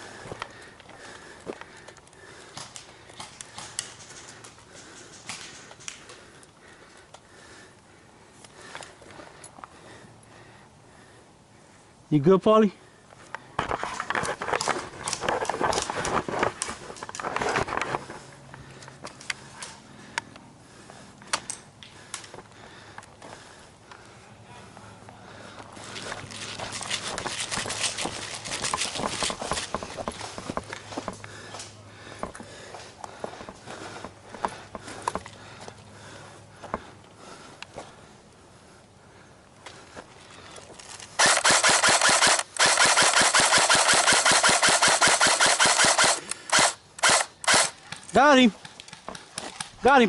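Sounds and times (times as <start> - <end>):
airsoft gunfire snaps: 41.2 - 47.7.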